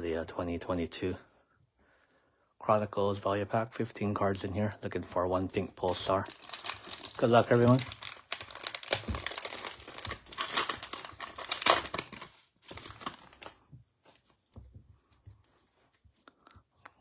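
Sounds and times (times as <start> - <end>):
plastic wrapper tearing and crinkling: 5.8 - 13.6.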